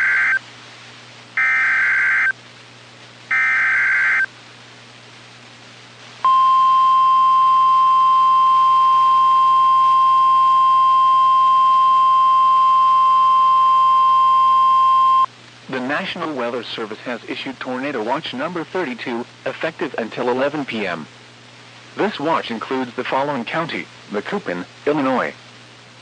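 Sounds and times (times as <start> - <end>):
screeching digital data bursts: 1.4 - 2.3
steady warning alarm tone: 1.4 - 2.3, 3.3 - 4.3.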